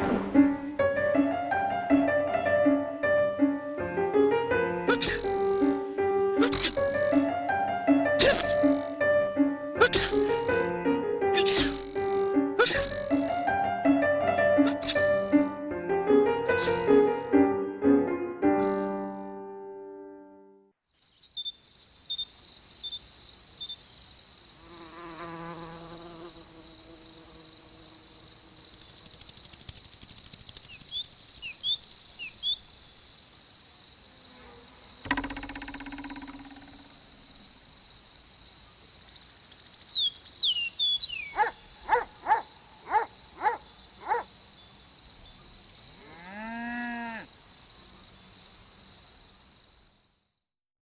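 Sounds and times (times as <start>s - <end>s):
high cricket-like trill: 0.0s - 19.2s, 28.4s - 33.0s, 35.1s - 37.6s, 40.5s - 44.3s
short quick calls: 4.8s - 5.8s, 6.4s - 7.3s, 8.2s - 10.6s, 11.3s - 13.4s, 14.6s - 15.5s, 41.2s - 44.3s
cartoon squeaks and chirps: 4.9s - 5.8s, 6.4s - 7.3s, 8.2s - 9.0s, 9.8s - 10.4s, 11.4s - 13.2s, 14.6s - 15.3s, 41.2s - 44.2s
brief thud: 35.1s - 36.8s.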